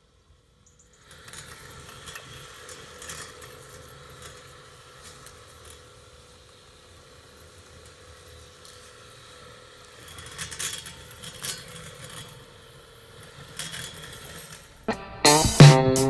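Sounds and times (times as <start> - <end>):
guitar music: 14.9 - 16.0.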